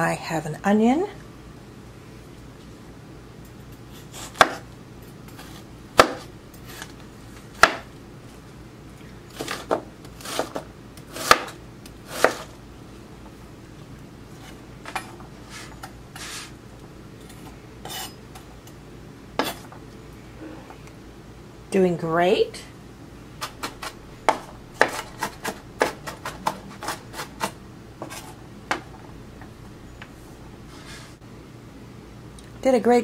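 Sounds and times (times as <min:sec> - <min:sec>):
knife chopping onion on board: 0:04.2 - 0:04.6, 0:05.4 - 0:06.9, 0:07.6 - 0:07.9, 0:09.4 - 0:12.5, 0:23.4 - 0:28.8.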